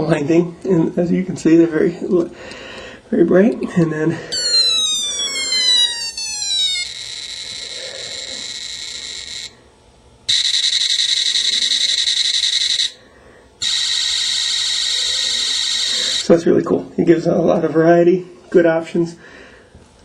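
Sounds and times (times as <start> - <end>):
tinny toy sound effects: 4.3 - 9.5.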